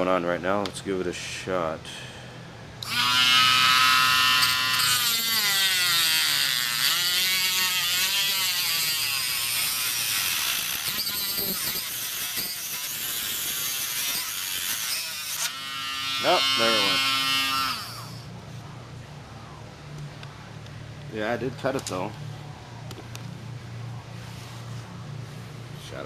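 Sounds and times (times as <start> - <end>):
rotary tool cutting metal: 2.8 - 18.2.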